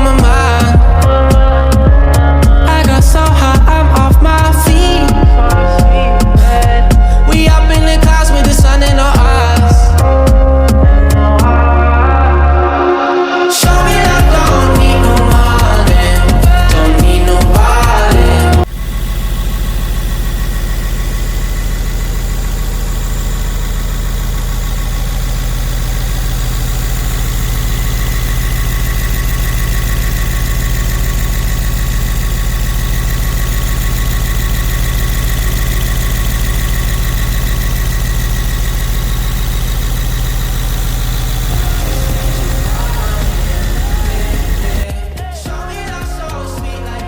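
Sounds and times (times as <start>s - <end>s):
car engine idling: 0.0s - 11.7s, 13.6s - 46.3s.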